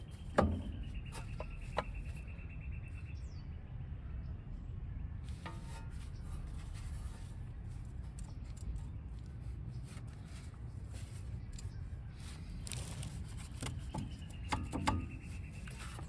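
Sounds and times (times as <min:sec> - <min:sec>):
metal parts and tools knocking: 0:00.0 - 0:02.1, 0:13.5 - 0:16.0.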